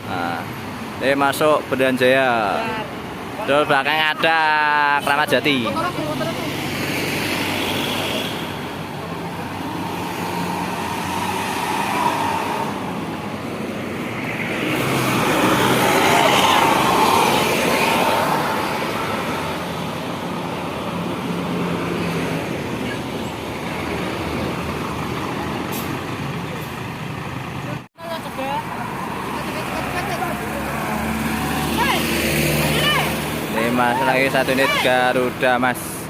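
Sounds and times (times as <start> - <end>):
buses driving past: 0.0 - 36.0
tyre and road noise: 0.0 - 36.0.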